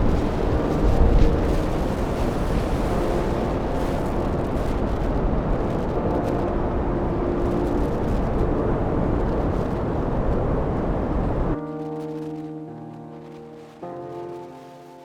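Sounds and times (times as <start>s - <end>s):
strong wind buffeting microphone: 0.0s - 11.6s.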